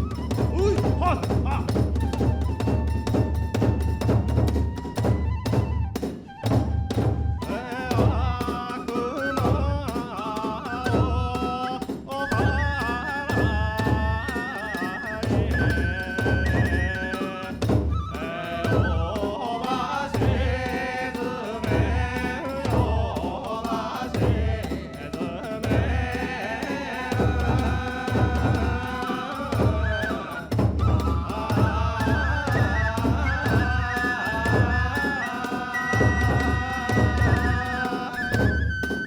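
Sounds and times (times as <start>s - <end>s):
taiko drum beating: 0.0s - 8.6s, 9.4s - 12.6s, 21.6s - 24.9s, 25.6s - 26.3s, 27.1s - 35.2s, 35.8s - 38.7s
high flute melody: 0.0s - 9.9s, 12.2s - 20.9s, 29.2s - 39.0s.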